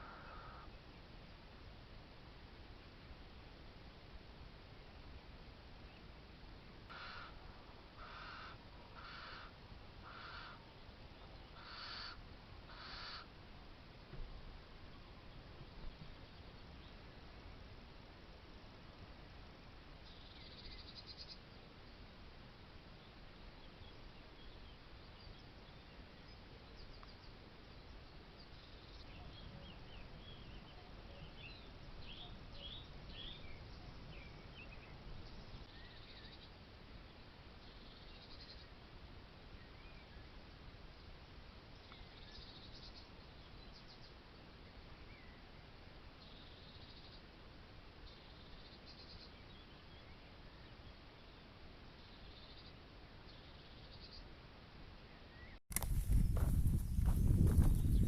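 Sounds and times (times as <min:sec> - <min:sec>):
owl hissing screeches: 0:00.0 - 0:00.7, 0:06.9 - 0:07.4, 0:08.0 - 0:10.6, 0:11.6 - 0:13.3
outdoor background hiss: 0:00.0 - 0:58.0
small birds chirping: 0:55.1 - 0:58.0.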